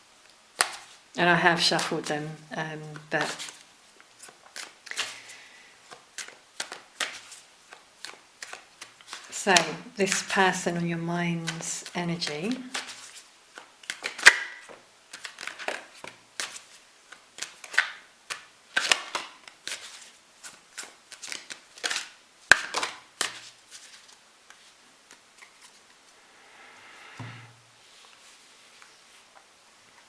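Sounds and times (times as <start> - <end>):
cards being shuffled: 4.2 - 5.2, 5.9 - 26.0.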